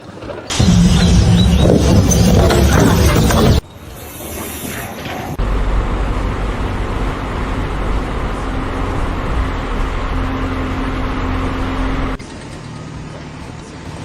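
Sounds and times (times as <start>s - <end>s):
heavy engine rumbling: 0.5s - 3.6s, 5.2s - 12.3s.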